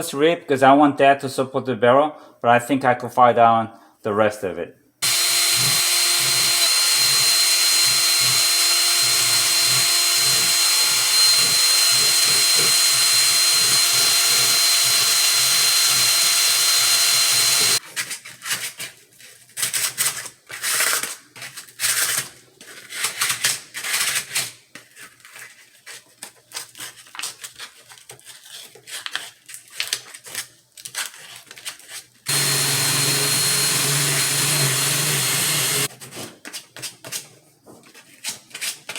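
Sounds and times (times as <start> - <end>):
rotary grinder whining: 5.0 - 17.8, 32.3 - 35.9.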